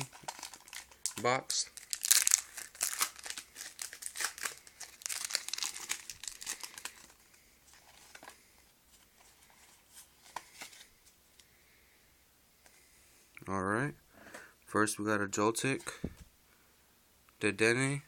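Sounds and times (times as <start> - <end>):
foil wrapper crinkling and tearing: 0.0 - 7.2.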